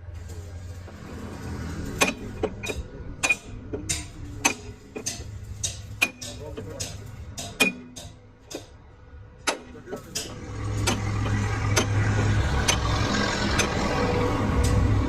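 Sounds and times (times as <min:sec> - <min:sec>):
sharp metal clicks and knocks: 0:00.1 - 0:08.8, 0:09.4 - 0:13.9
machining noise: 0:10.0 - 0:15.0.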